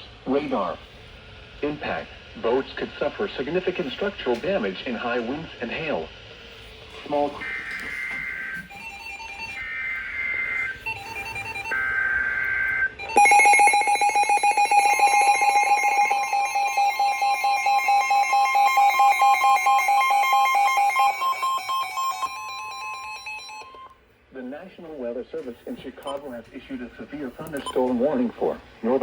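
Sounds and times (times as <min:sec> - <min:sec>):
screeching digital data bursts: 0:07.4 - 0:23.8
two-pitch attention alarm: 0:07.4 - 0:24.0.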